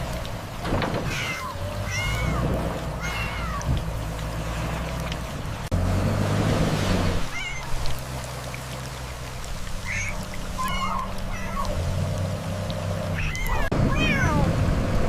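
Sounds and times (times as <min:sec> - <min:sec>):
rushing floodwater: 0:00.0 - 0:15.0
kittens mewing: 0:01.0 - 0:02.4, 0:03.0 - 0:03.8, 0:09.8 - 0:11.8, 0:13.2 - 0:14.5.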